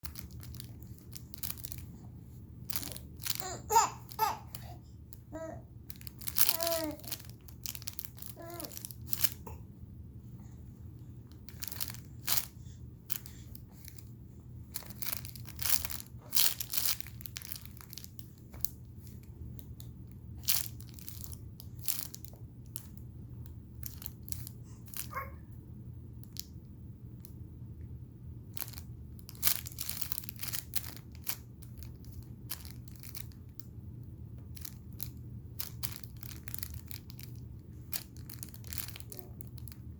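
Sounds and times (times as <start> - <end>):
crinkly material crackling: 0.0 - 9.6, 10.2 - 25.4, 26.2 - 26.5, 28.5 - 39.9
steady low hum: 0.0 - 39.9
baby babbling: 3.4 - 5.7, 6.4 - 7.2, 8.3 - 8.8, 25.1 - 25.4.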